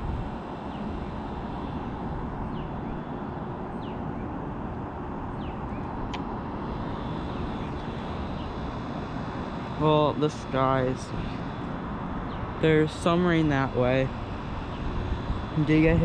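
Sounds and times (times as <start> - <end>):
wind buffeting microphone: 0.0 - 9.7, 11.0 - 16.0
sharp click: 6.1 - 6.3.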